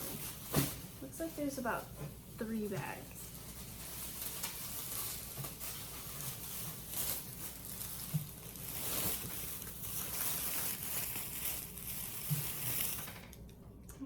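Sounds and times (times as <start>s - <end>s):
plastic bags rustling: 0.0s - 13.5s.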